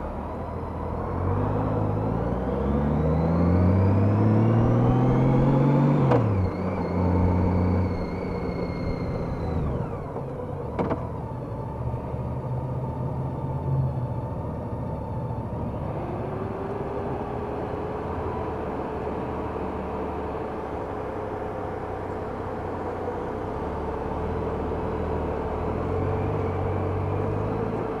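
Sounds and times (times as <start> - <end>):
whining tone: 0.0 - 11.0
wind and road noise: 0.0 - 28.0.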